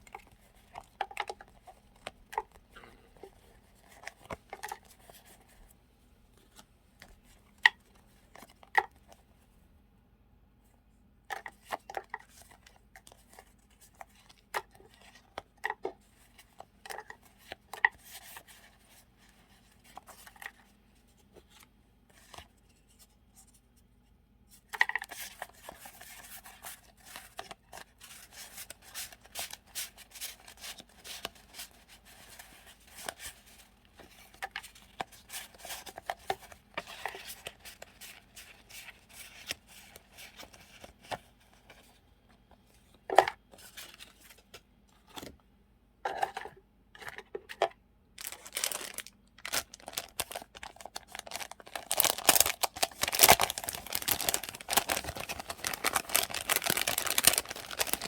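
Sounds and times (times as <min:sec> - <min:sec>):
paper rustling and crinkling: 0:24.7 - 0:42.0, 0:48.2 - 0:58.0.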